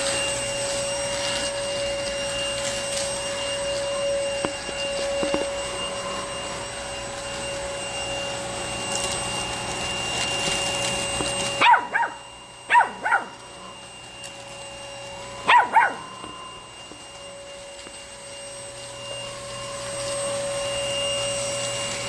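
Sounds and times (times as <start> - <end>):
stick vacuum whining: 0.0 - 22.0
dog barking: 11.6 - 13.4, 15.4 - 16.2.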